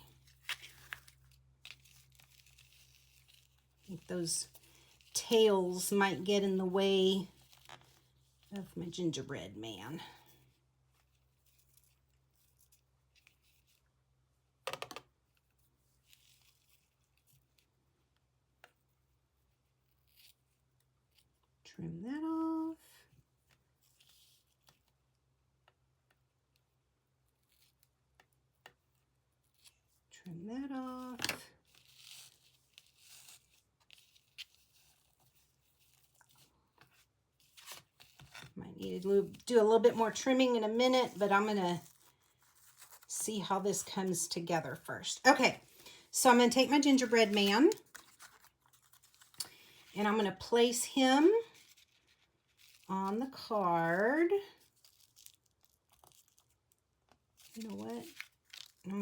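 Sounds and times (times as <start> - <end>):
ribbon rustling: 0.0 - 8.8, 31.0 - 59.0.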